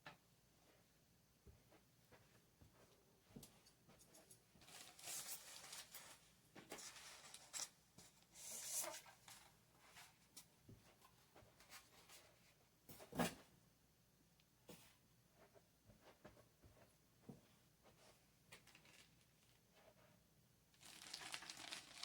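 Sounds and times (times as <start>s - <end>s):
packaging rustling and scraping: 4.6s - 10.2s, 20.8s - 22.0s.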